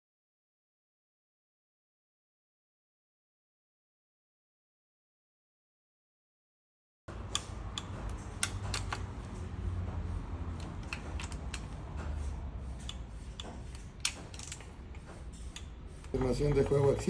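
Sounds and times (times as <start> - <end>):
metal parts clicking and tapping: 7.1 - 9.6, 10.5 - 17.0.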